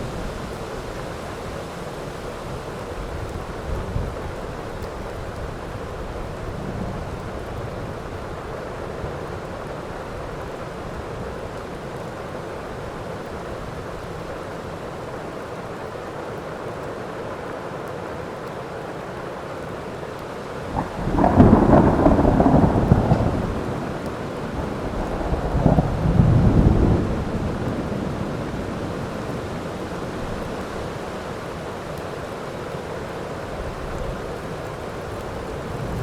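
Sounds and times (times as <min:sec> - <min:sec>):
heavy rain: 0:00.0 - 0:36.0
thunderclap rumbling: 0:20.7 - 0:30.4.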